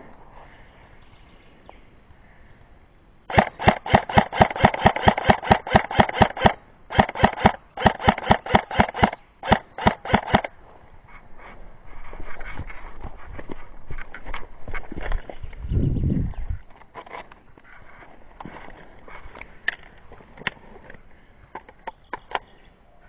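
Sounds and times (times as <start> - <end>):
airsoft gun firing bursts: 3.3 - 10.5.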